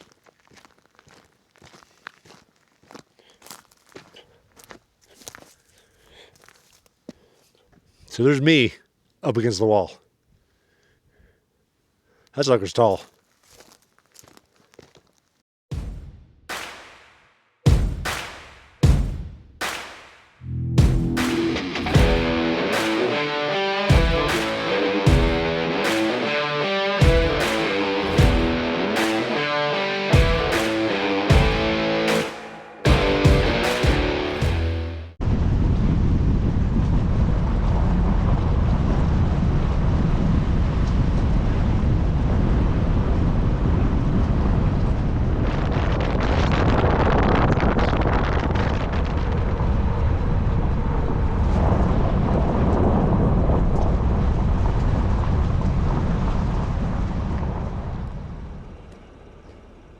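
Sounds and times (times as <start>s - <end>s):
rock music with electric guitar: 20.6s - 35.2s
wind and road noise in car: 35.3s - 59.9s.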